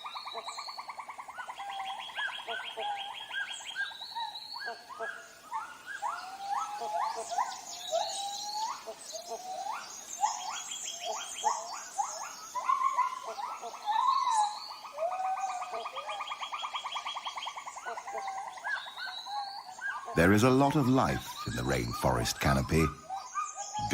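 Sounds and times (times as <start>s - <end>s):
high chirps: 20.2s - 23.1s.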